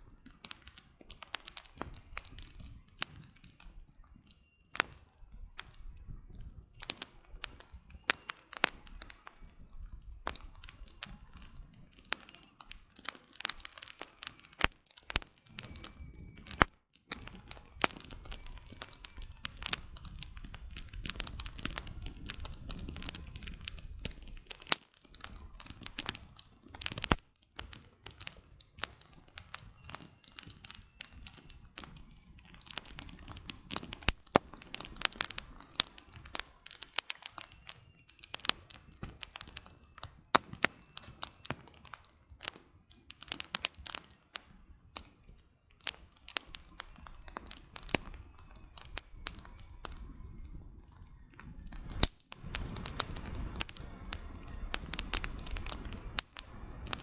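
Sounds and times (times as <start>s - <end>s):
campfire crackling and popping: 0.0s - 57.0s.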